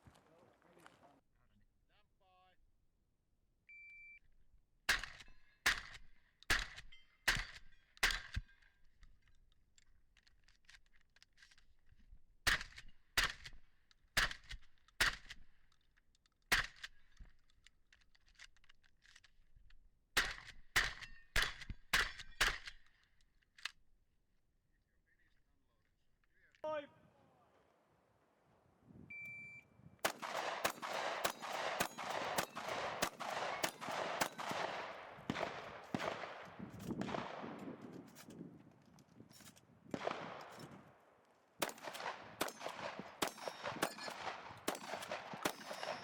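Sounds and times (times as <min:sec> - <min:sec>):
short electronic beep: 0:29.1 - 0:29.8
shotgun firing: 0:30.0 - 0:37.9, 0:39.9 - 0:40.8, 0:41.6 - 0:46.0.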